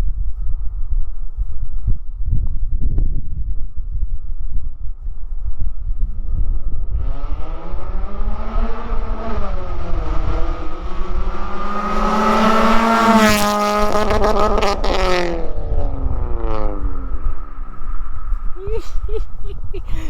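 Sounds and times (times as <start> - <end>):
car engine accelerating loudly: 6.8 - 18.6.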